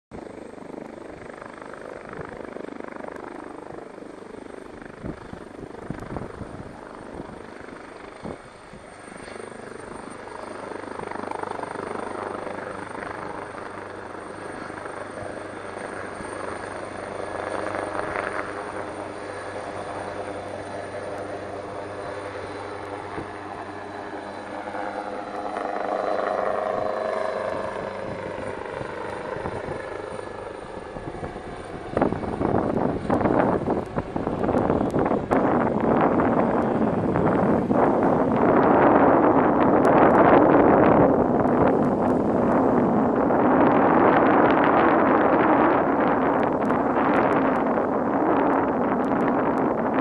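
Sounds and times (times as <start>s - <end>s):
helicopter turbine and rotor: 0.1s - 50.0s.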